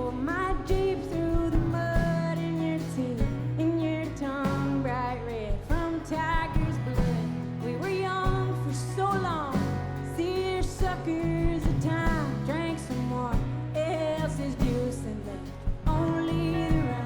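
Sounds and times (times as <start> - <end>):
live band playing: 0.0 - 17.0
gliding lead melody: 6.8 - 17.0.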